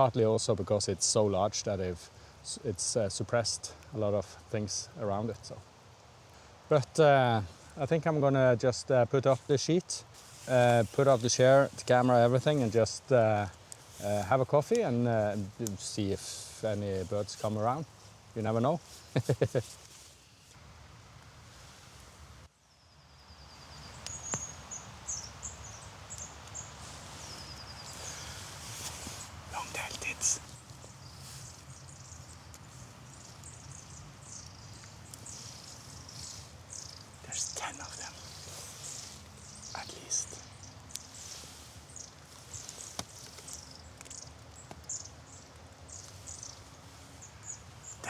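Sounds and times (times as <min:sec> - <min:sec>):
small birds high thin calls: 0:23.3 - 0:48.0.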